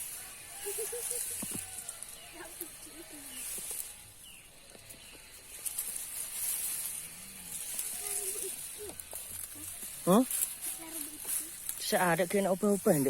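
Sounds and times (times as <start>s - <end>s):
insects buzzing in grass: 0.0s - 13.0s.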